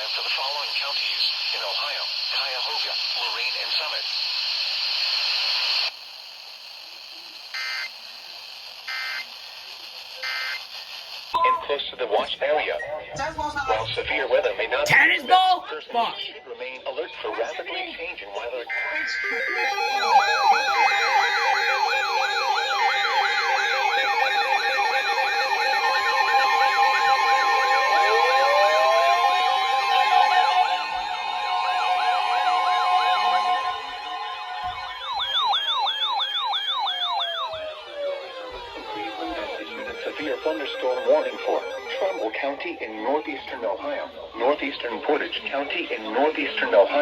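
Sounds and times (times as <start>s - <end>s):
radio static hiss: 0.0s - 19.4s, 37.6s - 47.0s
pulsing alarm tones: 7.5s - 7.9s, 8.9s - 9.3s, 10.2s - 10.6s, 12.6s - 14.7s, 18.7s - 47.0s
electronic warning siren: 7.5s - 8.0s, 8.6s - 9.4s, 10.1s - 10.7s, 18.7s - 47.0s
warbling digital data bursts: 18.7s - 30.8s, 38.2s - 43.5s
rising siren wail: 18.8s - 46.2s.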